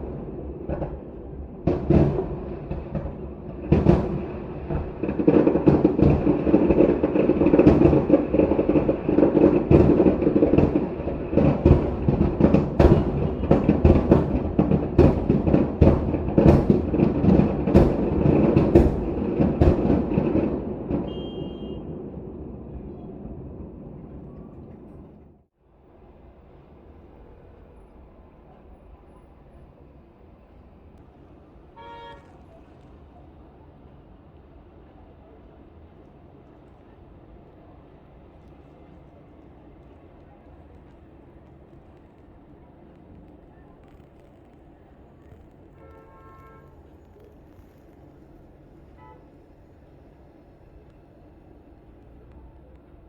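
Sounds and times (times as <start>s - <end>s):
fireworks bursting and booming: 0.0s - 24.1s
continuous rumble: 0.0s - 53.0s.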